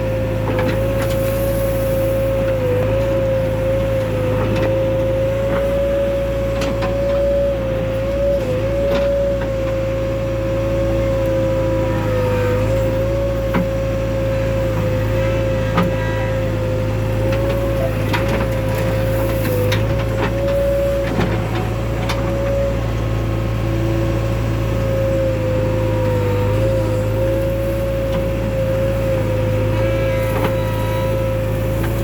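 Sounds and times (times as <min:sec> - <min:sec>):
diesel engine rumble: 0:00.0 - 0:32.0.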